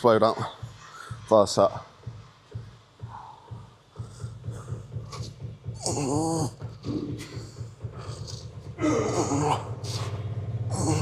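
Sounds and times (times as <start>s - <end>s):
man groaning: 5.8s - 7.4s, 8.7s - 10.1s, 10.7s - 11.0s
man grunting and exhaling: 5.8s - 7.4s, 8.0s - 11.0s.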